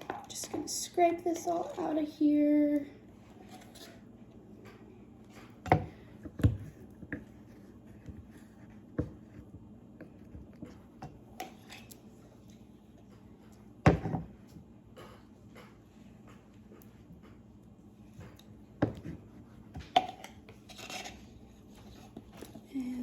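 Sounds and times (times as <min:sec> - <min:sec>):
utensil scraping container: 0:20.1 - 0:22.2.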